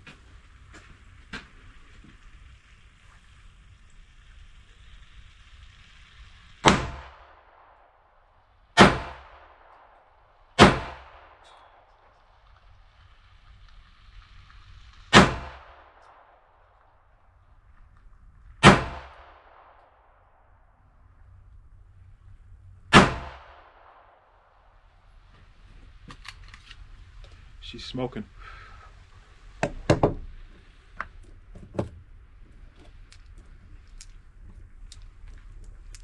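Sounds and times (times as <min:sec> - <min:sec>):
pistol shots with echo: 0:08.8 - 0:10.0, 0:10.6 - 0:11.9, 0:18.6 - 0:20.3, 0:22.9 - 0:24.3.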